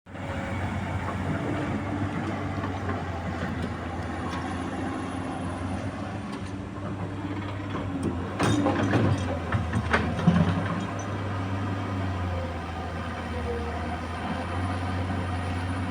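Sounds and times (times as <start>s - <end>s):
excavator diesel engine running: 0.1s - 15.9s.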